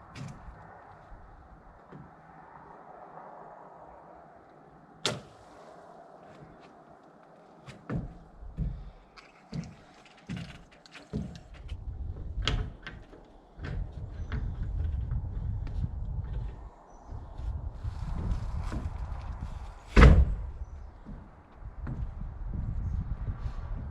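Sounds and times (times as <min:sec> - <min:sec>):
heavy low rumble: 0:13.6 - 0:23.9.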